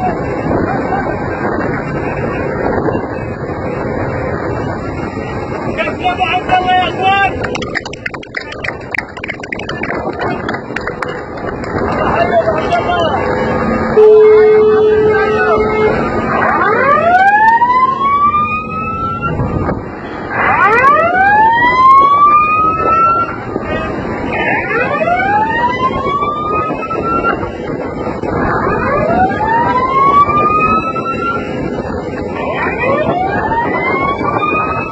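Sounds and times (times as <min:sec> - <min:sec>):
steady rushing noise: 0:00.0 - 0:34.9
siren wailing: 0:13.8 - 0:34.9.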